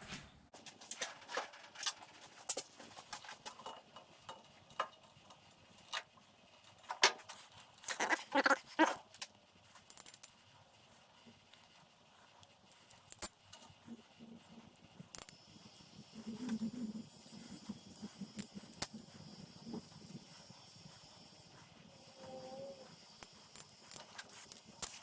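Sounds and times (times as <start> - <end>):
hand tools clicking and snipping: 6.9 - 10.4, 11.0 - 25.0.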